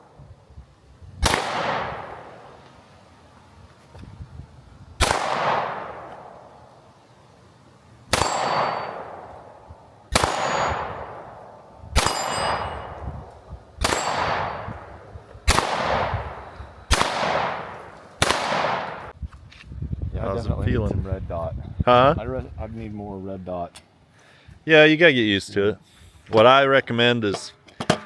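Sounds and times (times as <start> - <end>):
pistol shots: 1.2 - 2.9, 5.0 - 6.8, 8.1 - 19.1
steel target ringing: 8.1 - 16.4.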